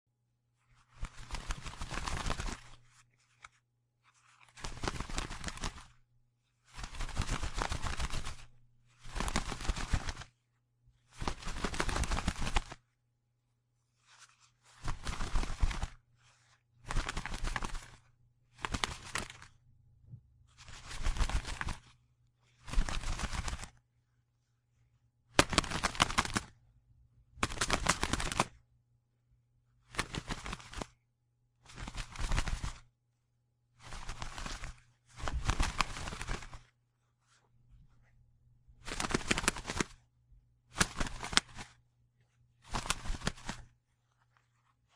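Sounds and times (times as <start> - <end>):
bird wings flapping: 0.8 - 3.4, 4.2 - 6.0, 6.7 - 10.4, 11.1 - 12.8, 14.1 - 19.6, 20.5 - 22.0, 22.6 - 23.8, 25.4 - 26.5, 27.4 - 28.6, 29.9 - 31.0, 31.6 - 32.9, 33.8 - 36.7, 38.8 - 40.0, 40.7 - 41.8, 42.6 - 43.7.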